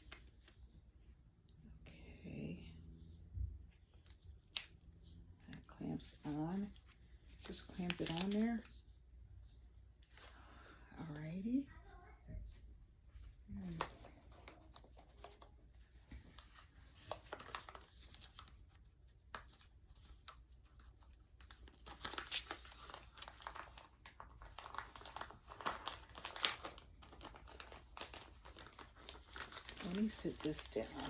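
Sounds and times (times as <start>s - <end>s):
packaging rustling and crinkling: 7.3s - 8.8s, 13.6s - 31.0s.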